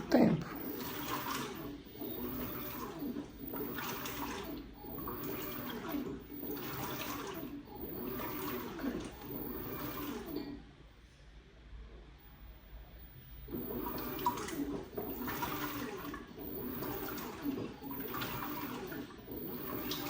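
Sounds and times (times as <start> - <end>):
washing machine water sloshing: 0.0 - 10.5, 13.4 - 20.0.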